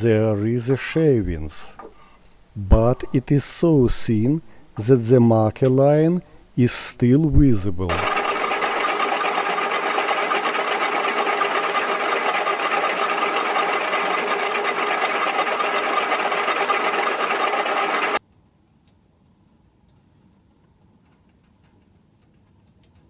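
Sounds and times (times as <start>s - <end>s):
milling machine motor whine: 7.8s - 18.2s.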